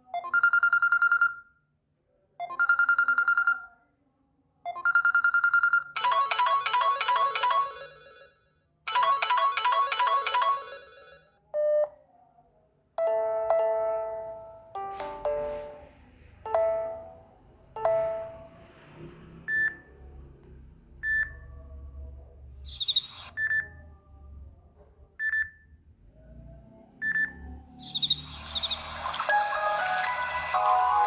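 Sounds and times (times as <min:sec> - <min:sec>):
ringtone melody: 0:04.9 - 0:11.2, 0:13.0 - 0:15.9, 0:16.5 - 0:18.5, 0:27.8 - 0:31.0
high chirping trill: 0:22.7 - 0:23.4, 0:27.8 - 0:31.0.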